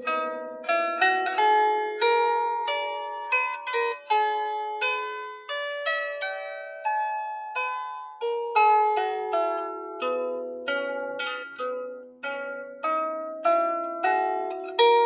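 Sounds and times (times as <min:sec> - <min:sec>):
lyre harp plucked melody: 0:00.0 - 0:15.0.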